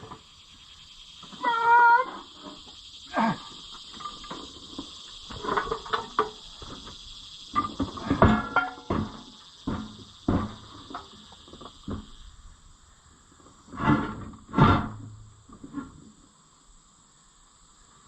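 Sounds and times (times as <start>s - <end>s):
insect chirring: 0.0s - 18.0s
steel parts knocking and clanking: 7.5s - 11.2s.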